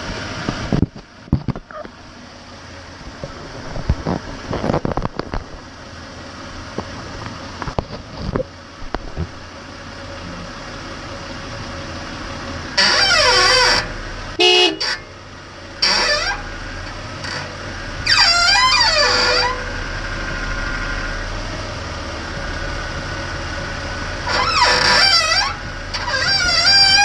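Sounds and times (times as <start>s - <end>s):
low vehicle running noise: 0.0s - 27.0s
high wavering squeals: 12.8s - 14.0s, 17.3s - 21.1s, 24.1s - 27.0s.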